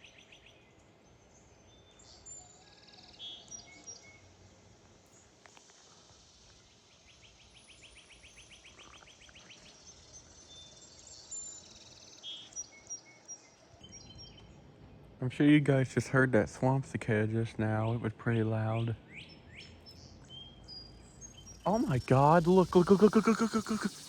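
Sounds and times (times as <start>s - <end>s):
bird chirps: 0.0s - 4.4s, 5.1s - 15.1s, 18.9s - 24.0s
cicada buzzing: 21.3s - 24.0s.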